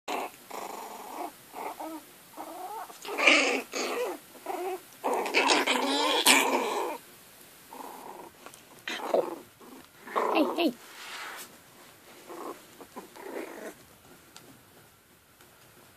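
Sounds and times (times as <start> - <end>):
puppies growling and yipping: 0.1 - 7.1, 7.7 - 10.8, 12.1 - 14.5.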